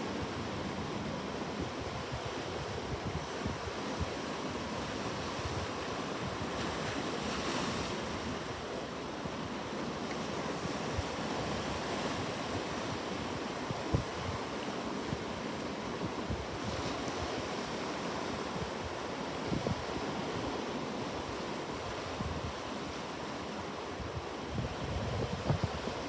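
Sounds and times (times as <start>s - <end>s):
wind buffeting microphone: 24.1s - 26.0s.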